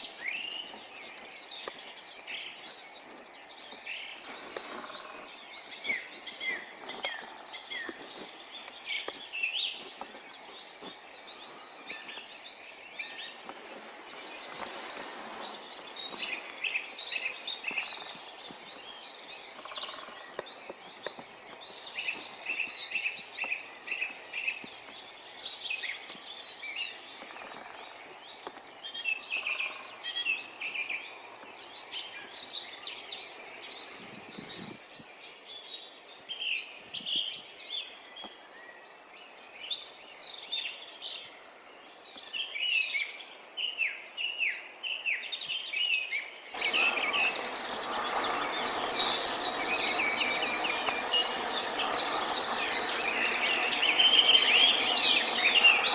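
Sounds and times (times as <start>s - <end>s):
songbirds singing and chirping: 0.0s - 55.9s
steady rushing noise: 46.6s - 55.9s.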